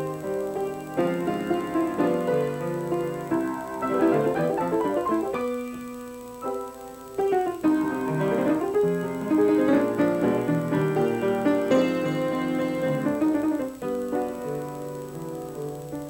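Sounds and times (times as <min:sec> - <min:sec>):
piano playing: 0:00.0 - 0:16.0.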